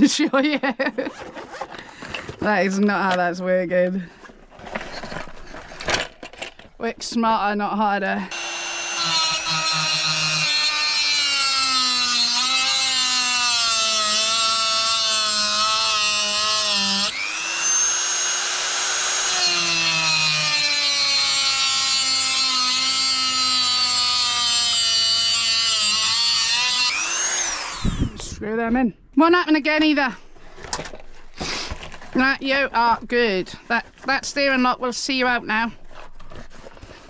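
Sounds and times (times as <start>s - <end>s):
power drill running: 8.3s - 28.4s.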